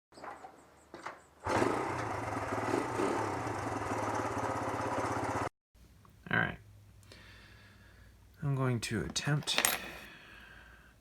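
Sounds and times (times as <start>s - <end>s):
small engine running: 1.4s - 5.5s.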